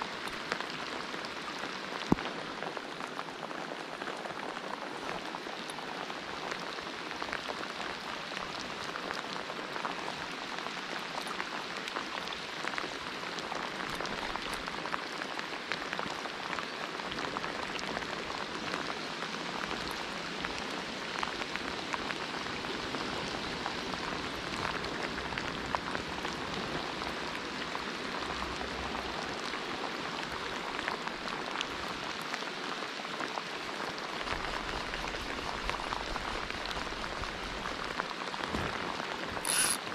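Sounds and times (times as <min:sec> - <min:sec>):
rain drops ticking: 0:00.0 - 0:39.9.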